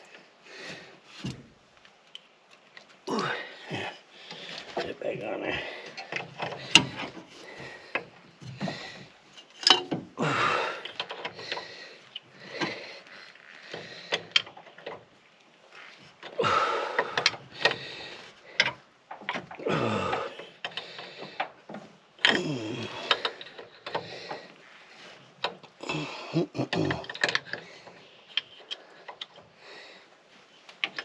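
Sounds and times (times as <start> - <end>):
tools and metal parts clinking: 9.4 - 10.0.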